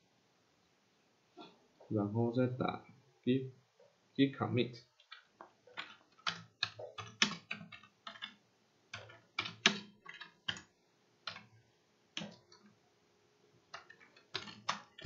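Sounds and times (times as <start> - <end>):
computer keyboard typing: 5.0 - 11.6, 12.2 - 12.8, 13.7 - 15.0.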